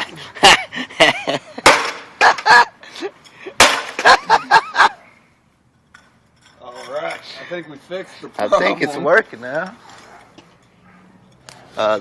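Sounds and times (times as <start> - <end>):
laptop being smashed: 1.6 - 2.4, 3.6 - 4.2.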